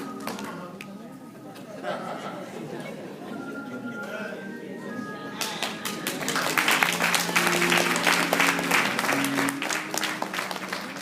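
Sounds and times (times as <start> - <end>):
audience applauding: 5.4 - 11.0.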